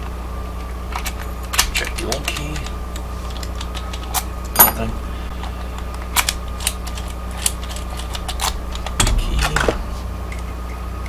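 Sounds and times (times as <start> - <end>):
electrical hum: 0.0 - 11.0
keys clicking in a lock: 0.9 - 4.9.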